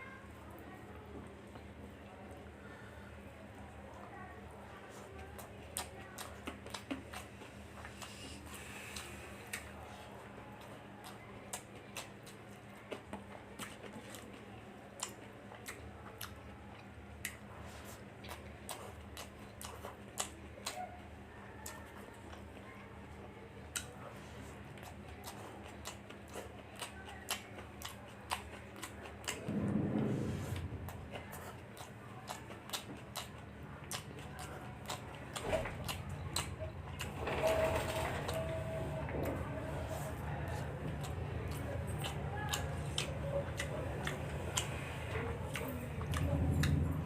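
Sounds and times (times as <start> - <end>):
chewing with mouth clicks: 4.7 - 22.9, 23.5 - 29.5, 30.9 - 47.0.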